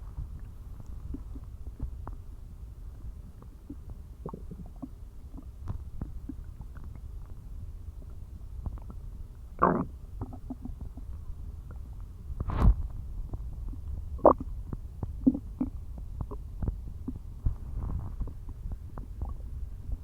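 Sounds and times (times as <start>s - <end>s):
stomach growling: 0.0s - 2.4s, 3.0s - 20.0s
stomach gurgles: 0.0s - 20.0s.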